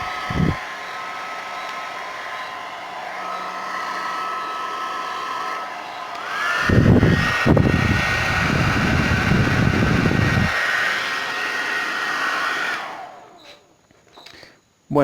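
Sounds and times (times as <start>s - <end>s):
airflow buffeting microphone: 0.0s - 0.6s, 6.6s - 10.6s
hair dryer running: 0.0s - 13.6s.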